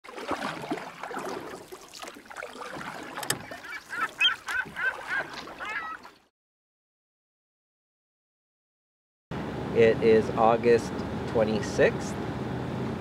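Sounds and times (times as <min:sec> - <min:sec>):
birds calling: 0:02.6 - 0:06.2.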